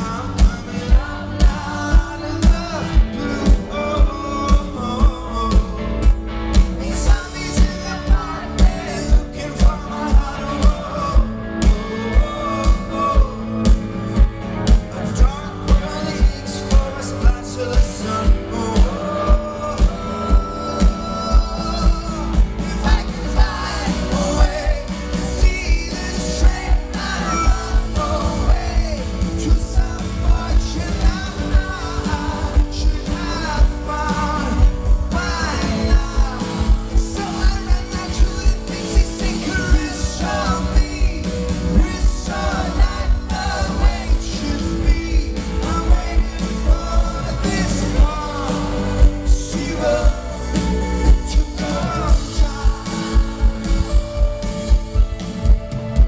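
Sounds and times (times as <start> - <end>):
lead singer singing: 0.0 - 55.0
live rock band playing: 0.0 - 56.0.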